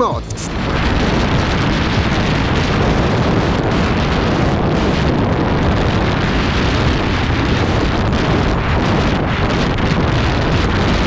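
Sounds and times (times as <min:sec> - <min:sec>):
motorcycle running: 0:00.0 - 0:11.0
wind rushing over microphone: 0:00.0 - 0:11.0.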